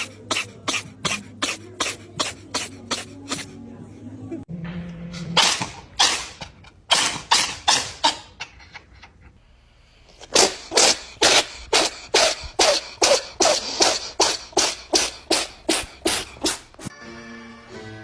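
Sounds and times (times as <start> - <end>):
cat sneezing: 0.0 - 3.5, 10.1 - 16.9.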